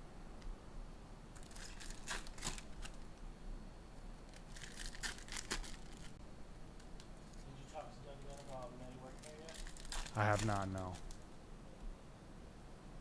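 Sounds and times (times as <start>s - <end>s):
wrappers crinkling and tearing: 1.3s - 3.1s, 4.3s - 6.2s, 6.8s - 11.2s.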